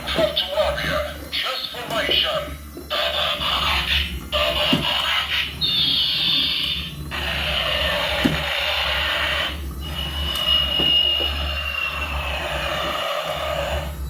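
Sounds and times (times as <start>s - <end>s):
toy vehicle electronic alarm tone: 9.0s - 12.7s.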